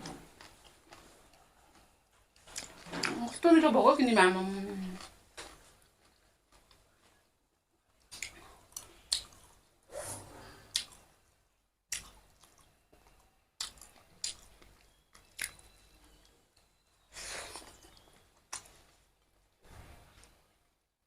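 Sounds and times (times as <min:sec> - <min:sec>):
person chewing: 0:00.1 - 0:03.1, 0:05.0 - 0:07.2, 0:07.9 - 0:09.7, 0:10.6 - 0:11.2, 0:11.9 - 0:18.9.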